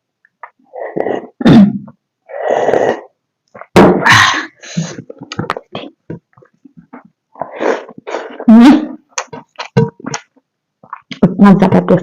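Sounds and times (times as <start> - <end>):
wet mouth clicks and lip smacks: 9.1 - 11.2.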